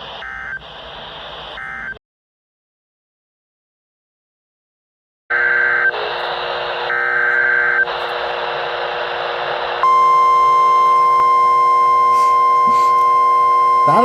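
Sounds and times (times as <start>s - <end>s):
radio static: 0.0s - 2.0s, 5.3s - 14.0s
single-pitch alarm tone: 9.8s - 14.0s.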